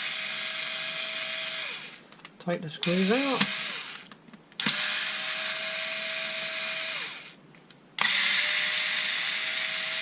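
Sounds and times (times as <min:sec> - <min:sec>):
electric screwdriver whining: 0:02.8 - 0:07.4, 0:08.0 - 0:10.0.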